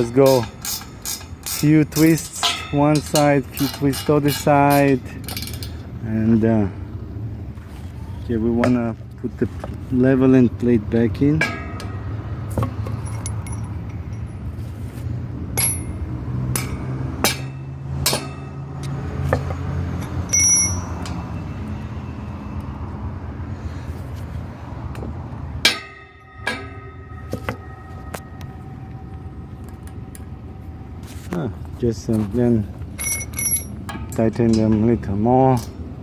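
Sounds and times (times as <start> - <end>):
metal hardware clinking and knocking: 0.0 - 5.8, 11.3 - 14.6, 15.5 - 21.2, 24.9 - 30.3, 32.9 - 34.9
steady low rumble: 5.0 - 35.2.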